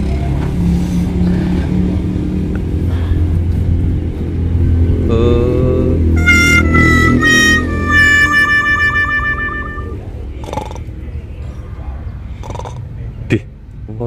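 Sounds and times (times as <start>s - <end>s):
truck engine running: 5.6s - 11.3s
rising tone: 6.1s - 10.1s
music: 6.2s - 10.1s.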